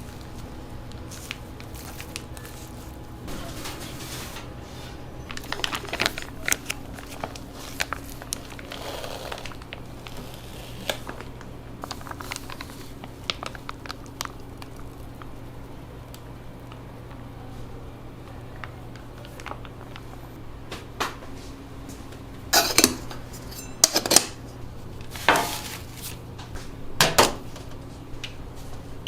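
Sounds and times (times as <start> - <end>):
steady low hum: 0.0 - 29.0
metal tools and moulds clacking: 22.6 - 24.4.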